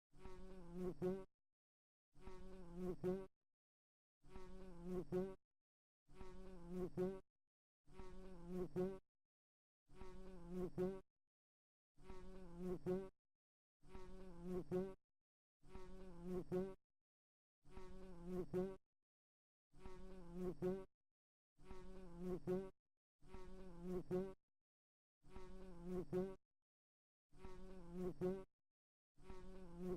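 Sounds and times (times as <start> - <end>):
fly buzzing: 0.2 - 1.3, 2.2 - 3.3, 4.2 - 5.4, 6.1 - 7.2, 7.9 - 9.0, 9.9 - 11.1, 12.0 - 13.2, 13.8 - 15.0, 15.6 - 16.8, 17.6 - 18.8, 19.7 - 20.9, 21.6 - 24.4, 25.2 - 26.4, 27.3 - 28.5, 29.2 - 29.9.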